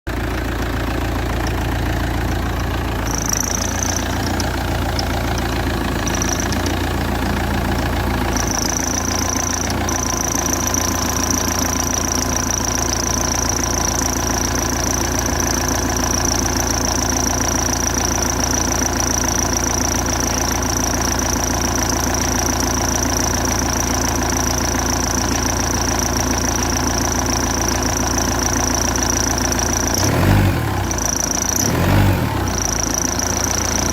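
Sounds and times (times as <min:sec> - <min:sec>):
car engine idling: 0:00.1 - 0:33.9
high whine from alternator belt: 0:02.2 - 0:33.9.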